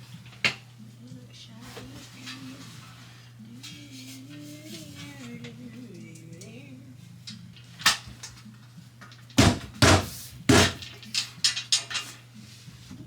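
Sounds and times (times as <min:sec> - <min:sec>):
low steady hum: 0:00.0 - 0:11.7
sharp knocks and bangs: 0:09.4 - 0:10.8.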